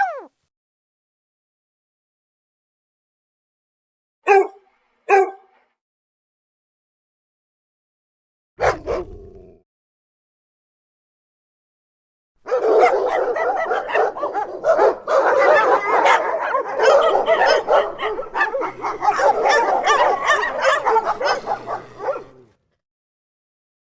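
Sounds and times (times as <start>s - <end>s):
dog barking rapidly: 4.2s - 5.5s, 8.6s - 9.2s, 12.5s - 22.5s.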